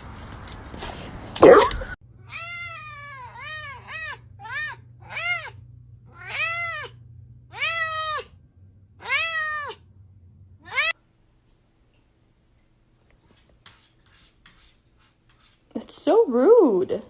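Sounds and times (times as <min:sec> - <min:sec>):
cat meowing: 0:01.4 - 0:08.3, 0:09.0 - 0:09.8, 0:10.6 - 0:11.0.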